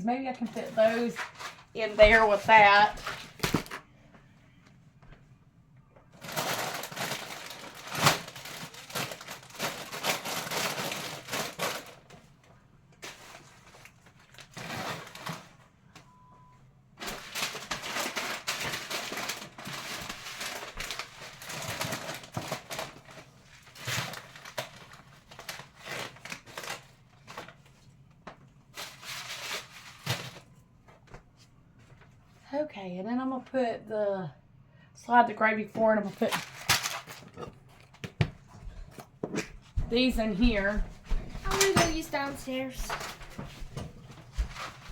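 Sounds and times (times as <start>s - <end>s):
plastic packets rustling: 0.5s - 3.8s, 6.2s - 12.2s, 13.0s - 15.6s, 17.0s - 30.5s, 36.0s - 38.0s, 39.7s - 44.9s.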